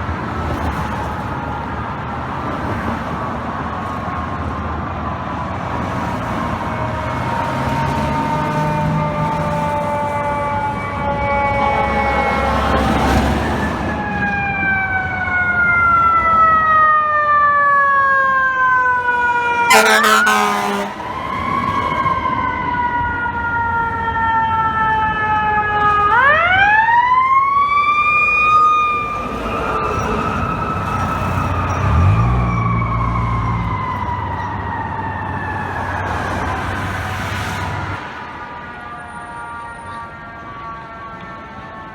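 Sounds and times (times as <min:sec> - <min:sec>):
fire truck siren winding: 0:06.4 - 0:37.4
air horn blast: 0:19.6 - 0:21.1.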